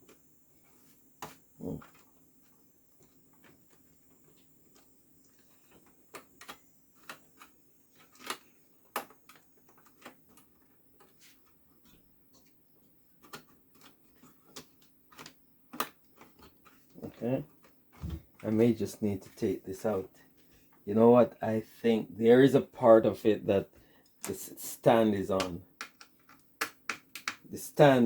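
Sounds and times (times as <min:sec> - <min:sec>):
plastic cover clicks and taps: 0:25.7 - 0:27.5.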